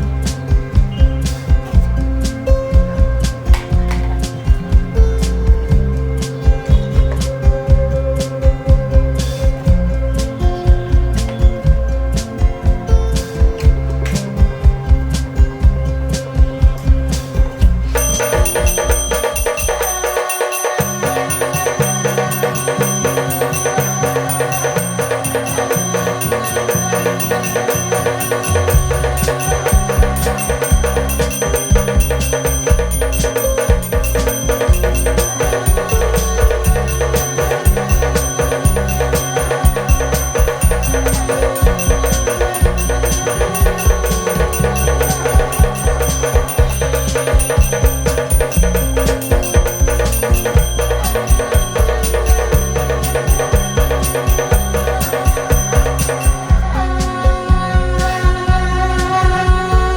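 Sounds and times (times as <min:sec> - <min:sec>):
fast percussion strokes: 0:17.1 - 0:59.9
metallic ringing: 0:17.9 - 0:57.2
machine beating small drum: 0:17.9 - 0:57.7
stepping bass line: 0:20.8 - 0:59.9.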